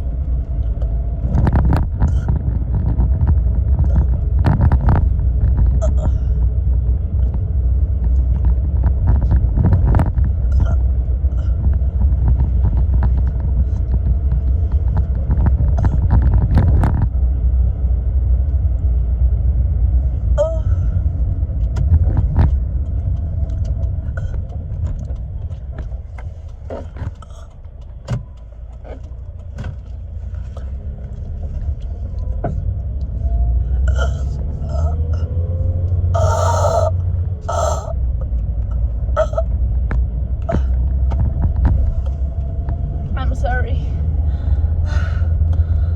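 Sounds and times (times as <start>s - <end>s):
car cabin road noise: 0.0s - 45.9s
small clicks and knocks: 21.6s - 33.2s.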